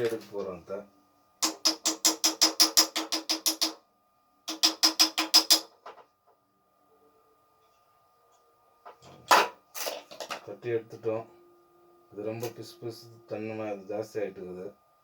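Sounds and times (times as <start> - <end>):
rapid tapping on metal: 1.4 - 3.8, 4.5 - 5.7.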